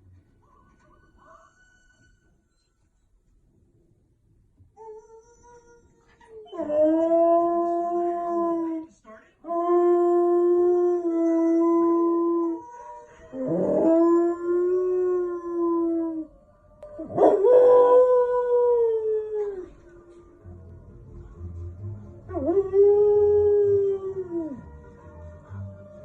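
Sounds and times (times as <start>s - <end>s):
dog howling: 9.6s - 19.7s.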